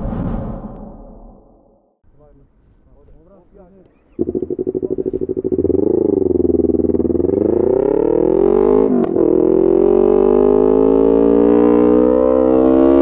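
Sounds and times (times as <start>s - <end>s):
loud motorcycle engine revving: 4.2s - 13.0s.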